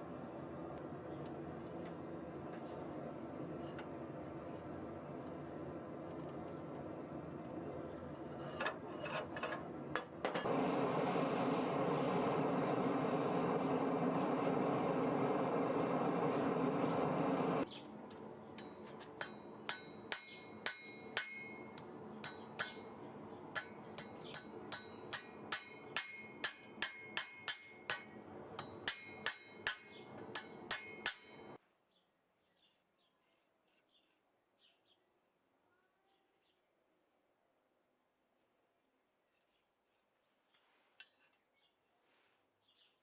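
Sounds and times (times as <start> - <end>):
steady background noise: 0.0 - 31.6
hammer ringing on metal tongs: 18.6 - 22.9, 23.5 - 31.6.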